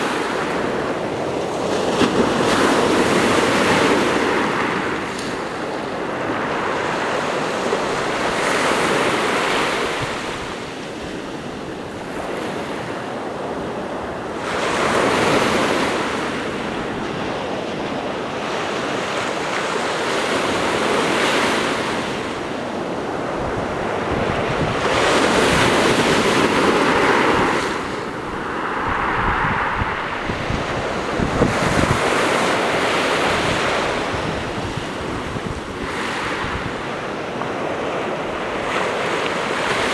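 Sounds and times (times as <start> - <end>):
sea waves breaking on shore: 0.0 - 39.9
wind buffeting microphone: 22.1 - 39.9.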